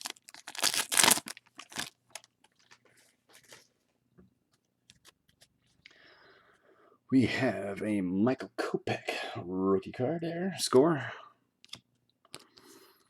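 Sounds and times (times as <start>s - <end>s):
packaging ripping: 0.0s - 2.3s
packaging crinkling: 0.0s - 3.7s.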